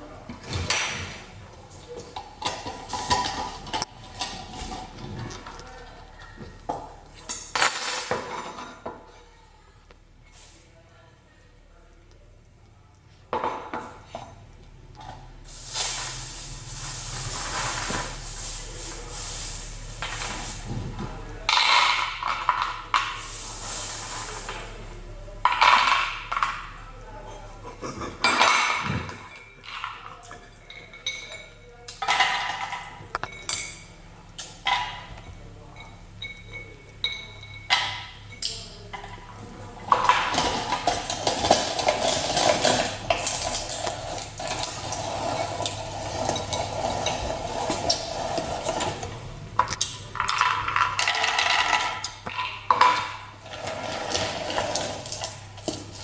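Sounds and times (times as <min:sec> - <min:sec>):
steady rough grinding noise: 0:40.1 - 0:49.5, 0:53.4 - 0:55.6.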